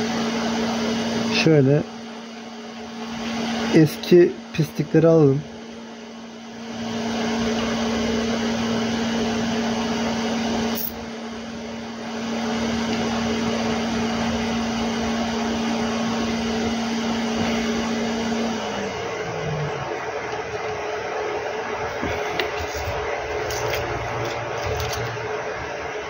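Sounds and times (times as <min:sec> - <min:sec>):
motor hum: 0:00.0 - 0:26.0.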